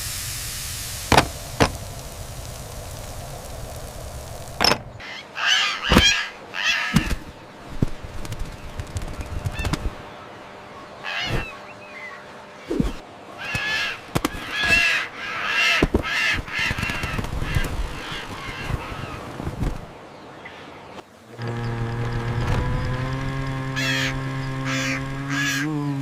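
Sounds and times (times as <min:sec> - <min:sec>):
seagulls squawking: 0:04.6 - 0:07.4, 0:08.6 - 0:20.8, 0:23.6 - 0:25.8.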